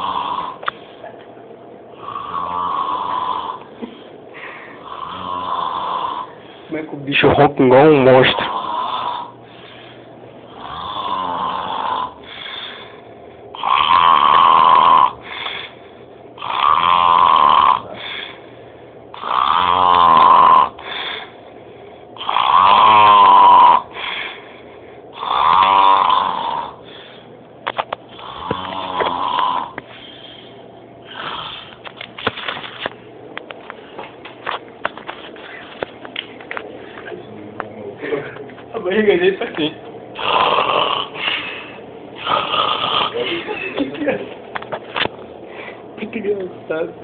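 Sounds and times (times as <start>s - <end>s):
loud snoring: 0.0s - 0.7s, 2.0s - 3.7s, 4.8s - 6.4s, 8.2s - 9.4s, 10.5s - 15.8s, 16.4s - 18.4s, 19.1s - 21.4s, 22.2s - 24.4s, 25.1s - 26.9s, 28.1s - 29.8s, 31.0s - 31.8s, 40.2s - 41.4s, 42.2s - 43.2s.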